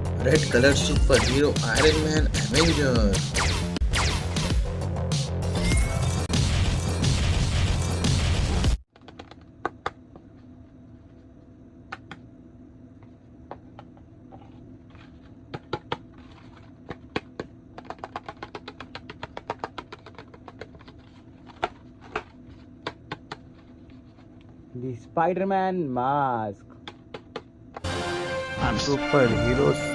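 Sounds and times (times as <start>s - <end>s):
loud music: 0.0s - 8.7s, 27.8s - 29.9s
toys and packaging clicking: 8.9s - 9.9s, 15.6s - 23.6s.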